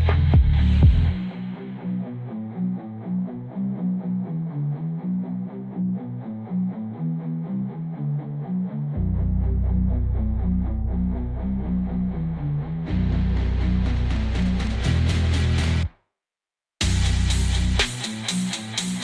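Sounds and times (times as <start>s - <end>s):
heavy bass: 0.0s - 4.4s, 8.9s - 15.9s, 16.8s - 19.0s
guitar picking riff: 1.5s - 15.9s.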